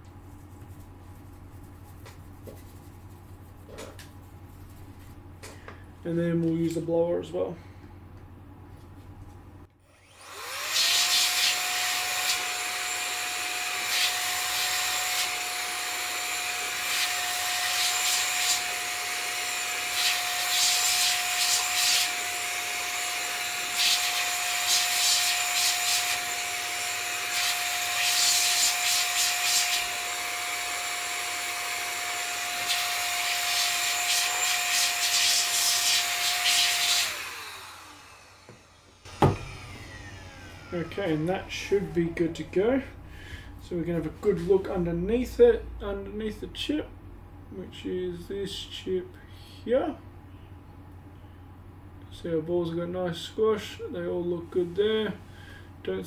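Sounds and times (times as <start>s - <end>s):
electric air blower whining: 9.9s - 43.8s.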